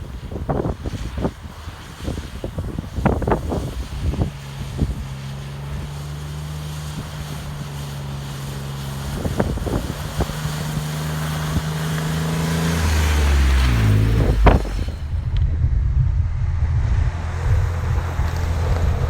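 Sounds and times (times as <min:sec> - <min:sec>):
tyres on dirt: 0:00.0 - 0:15.3
vehicle engine hum: 0:00.0 - 0:19.0
wind noise: 0:00.0 - 0:19.0.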